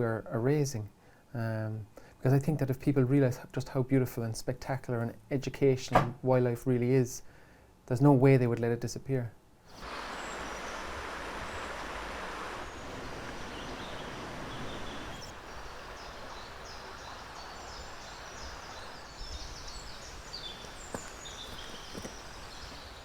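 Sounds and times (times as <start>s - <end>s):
steady outdoor hiss: 0.0s - 23.0s
small birds chirping: 9.7s - 23.0s.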